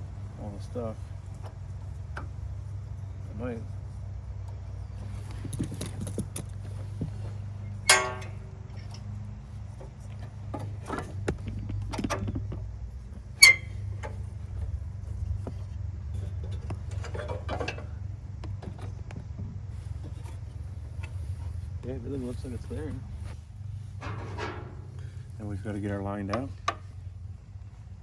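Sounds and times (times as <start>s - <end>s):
metal parts clinking: 7.8s - 9.0s, 13.4s - 13.9s
ringing metal clanks: 7.8s - 9.0s, 13.4s - 14.2s, 24.0s - 25.1s.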